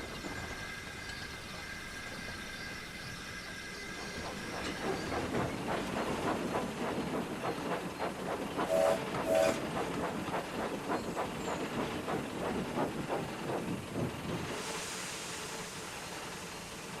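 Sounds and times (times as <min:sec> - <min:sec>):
steam locomotive chuffing: 0:00.0 - 0:17.0
hiss of steam: 0:08.4 - 0:17.0
train whistle toots: 0:08.7 - 0:09.7.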